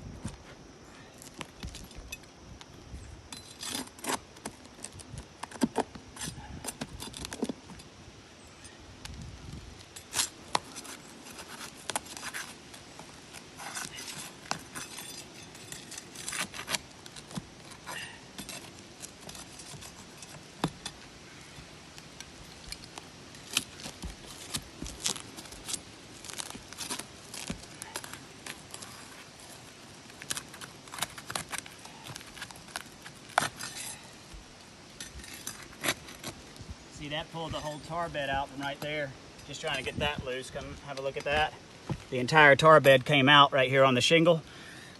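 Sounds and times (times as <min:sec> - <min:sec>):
sharp cracks and scrapes: 0:03.3 - 0:07.9, 0:09.8 - 0:21.1, 0:21.9 - 0:41.5
shingle being pried up: 0:10.0 - 0:21.1, 0:22.0 - 0:34.4.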